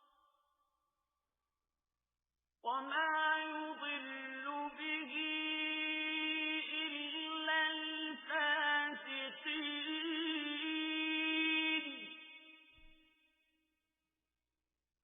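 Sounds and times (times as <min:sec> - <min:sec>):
man chanting: 0:02.7 - 0:12.2.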